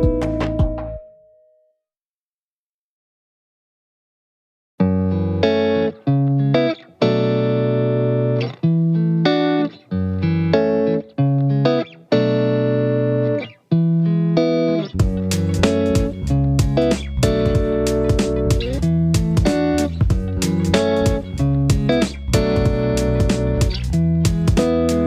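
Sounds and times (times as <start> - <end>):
drum beat: 0.0 - 0.8, 15.0 - 25.0
guitar-led tune: 0.0 - 1.4, 4.8 - 25.0.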